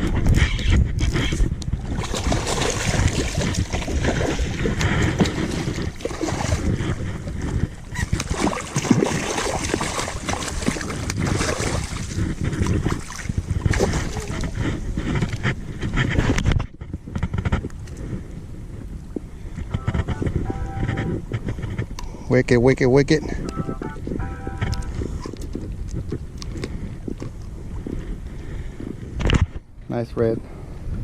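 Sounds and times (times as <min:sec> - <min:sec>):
water splashing and lapping: 0:00.0 - 0:16.7
wind buffeting microphone: 0:00.0 - 0:31.0.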